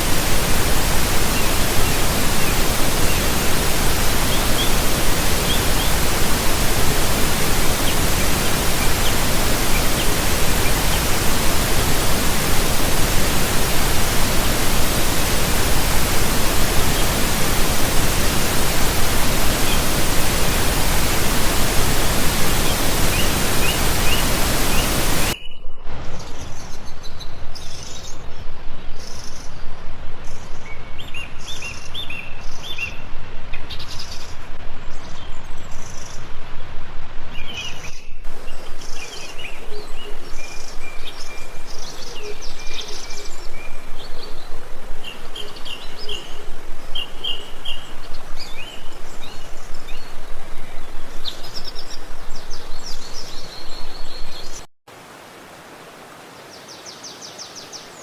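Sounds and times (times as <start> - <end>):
stream water rushing: 0.0 - 25.4, 38.3 - 58.0
birds chirping: 0.0 - 25.6, 38.3 - 54.7.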